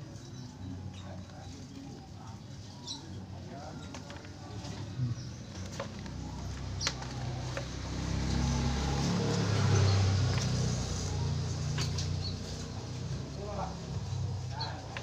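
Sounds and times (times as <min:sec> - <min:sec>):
vehicle engine passing by: 0:04.4 - 0:15.0.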